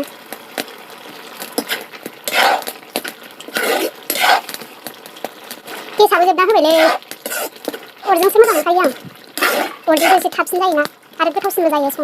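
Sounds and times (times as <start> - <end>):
metal spoon scraping cooking pot: 1.6 - 2.8, 3.4 - 4.6, 6.6 - 7.8, 9.3 - 10.4.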